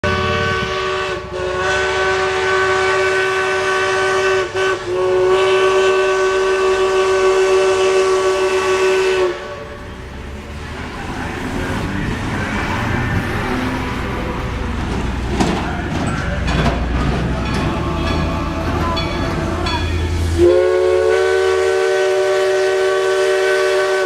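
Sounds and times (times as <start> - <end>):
steam locomotive chime whistle: 0.0 - 9.9, 16.1 - 24.0
low rumble of train running: 0.0 - 24.0.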